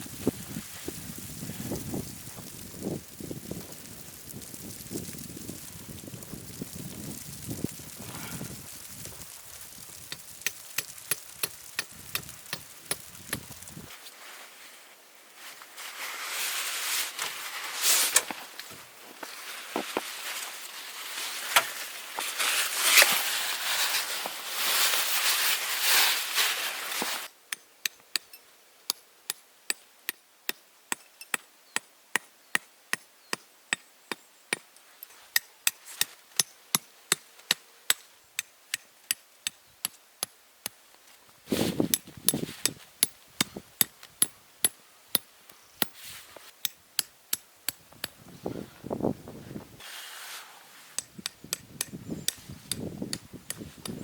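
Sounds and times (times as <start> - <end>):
rustling and scraping: 10.8 - 27.3, 41.0 - 42.9, 45.8 - 46.6, 48.4 - 51.0.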